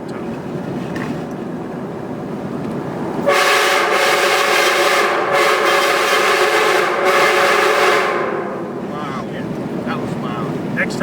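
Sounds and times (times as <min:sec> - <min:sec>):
vehicle road noise: 0:00.0 - 0:11.0
train horn blasting: 0:03.2 - 0:08.9.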